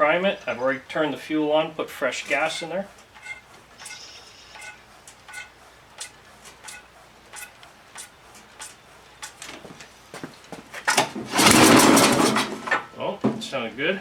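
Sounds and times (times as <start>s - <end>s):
primer bulb squeaky clicks: 2.4s - 9.4s
engine pull-started: 10.9s - 12.9s.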